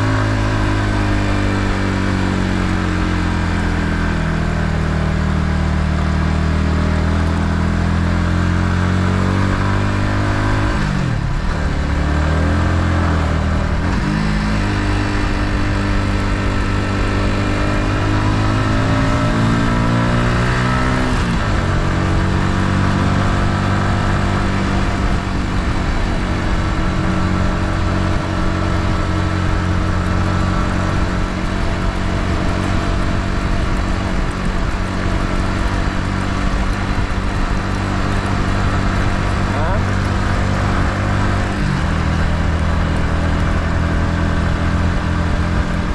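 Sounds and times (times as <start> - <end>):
motorcycle engine running: 0.0 - 45.9.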